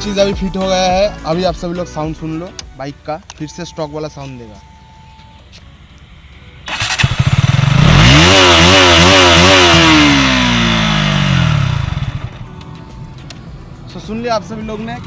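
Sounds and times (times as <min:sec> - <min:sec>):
motorcycle engine idling and revving: 0:06.0 - 0:15.0.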